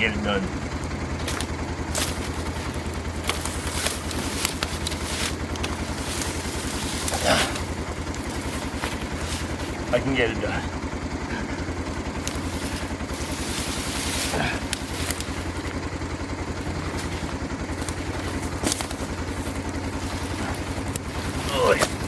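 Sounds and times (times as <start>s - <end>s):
utility vehicle engine idling: 0.0s - 22.0s
wood knocking and scraping: 1.2s - 9.9s.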